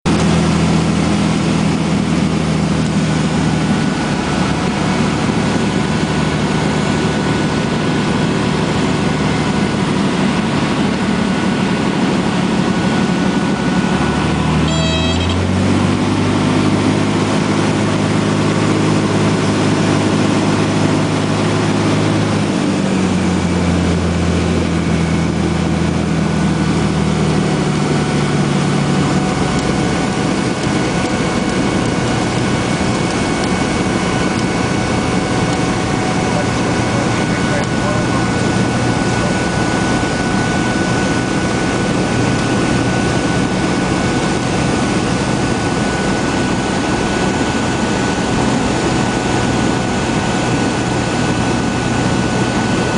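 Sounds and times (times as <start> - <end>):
propeller plane engine droning: 0.0 - 52.9.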